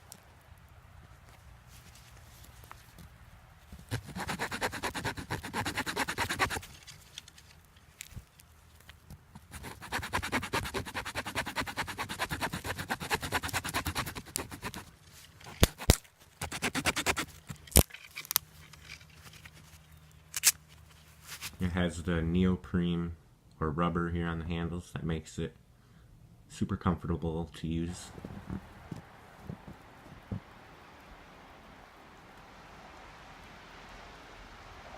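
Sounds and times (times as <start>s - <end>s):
rapid rasping scrapes: 3.9s - 6.7s, 9.4s - 17.5s.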